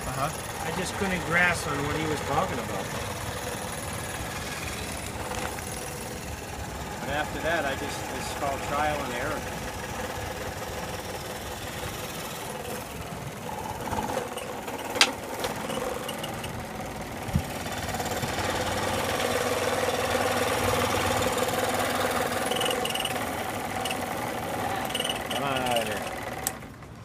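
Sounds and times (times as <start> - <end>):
scroll saw blade chattering: 13.8 - 16.6, 21.9 - 26.6.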